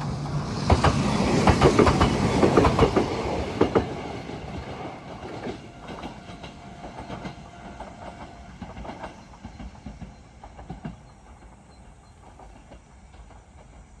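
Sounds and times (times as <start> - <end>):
train wheels clacking over rail joints: 0.0 - 14.0.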